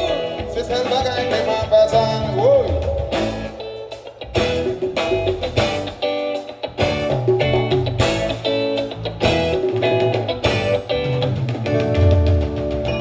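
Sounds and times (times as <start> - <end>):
bass: 0.0 - 13.0
drums: 0.0 - 13.0
guitar lines: 0.0 - 13.0.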